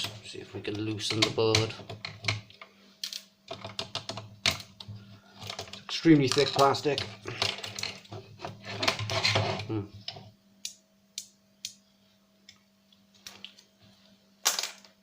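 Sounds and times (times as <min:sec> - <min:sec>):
plastic and metal parts clattering: 0:05.4 - 0:09.7.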